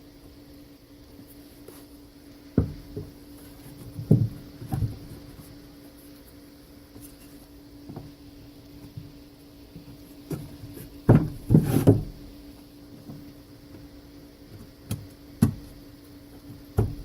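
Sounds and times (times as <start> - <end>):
steady low hum: 0.0 - 17.0
dull wooden knocks: 2.6 - 3.2, 3.8 - 5.1, 11.1 - 12.2, 16.8 - 17.0.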